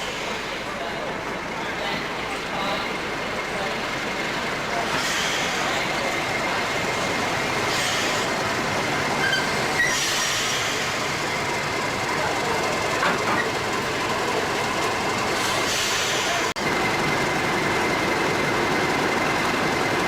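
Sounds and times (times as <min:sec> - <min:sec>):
train wheels rumbling on rails: 0:00.0 - 0:20.0
high wheel squeals: 0:09.0 - 0:11.0.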